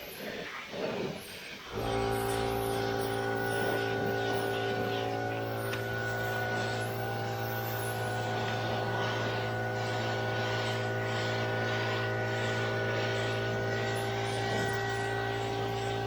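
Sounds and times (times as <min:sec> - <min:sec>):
air compressor humming: 0:01.7 - 0:16.0.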